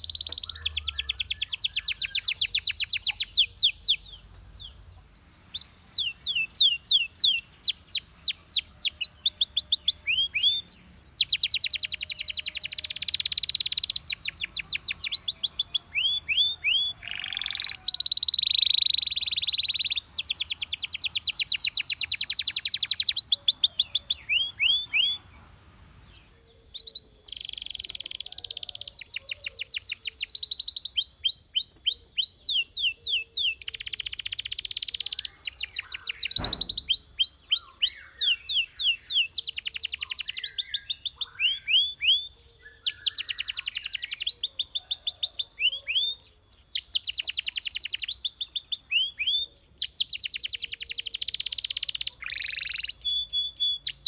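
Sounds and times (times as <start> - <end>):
canary singing trills: 0.0 - 54.0
single click: 36.2 - 37.0.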